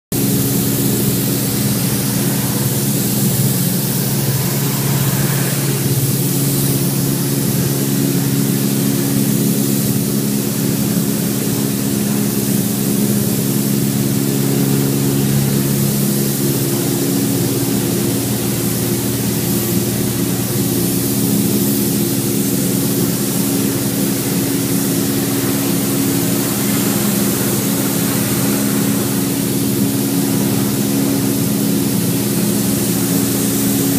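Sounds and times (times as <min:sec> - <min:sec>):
machine hum: 0:00.1 - 0:33.9
constant hiss: 0:14.8 - 0:33.9.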